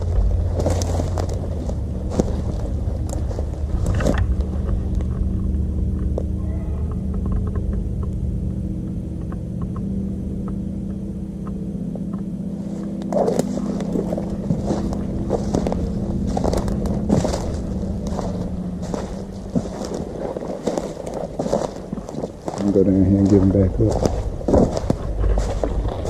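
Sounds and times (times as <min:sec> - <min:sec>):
crunching and scraping in brush: 0:00.0 - 0:09.9, 0:11.4 - 0:26.0
engine humming: 0:00.0 - 0:26.0.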